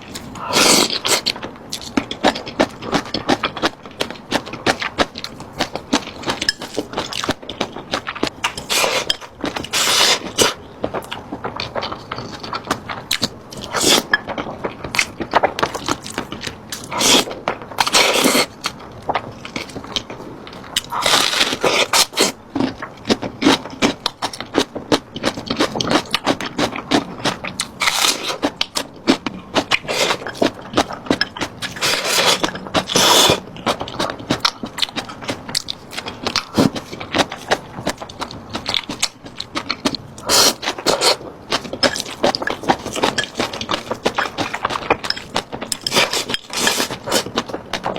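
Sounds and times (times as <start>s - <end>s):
crunching and chewing: 0.0s - 47.9s.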